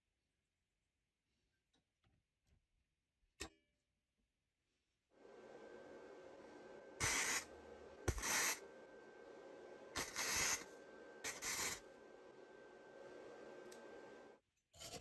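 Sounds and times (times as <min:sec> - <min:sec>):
hissing spray bursts: 0:07.0 - 0:08.6, 0:10.0 - 0:11.8.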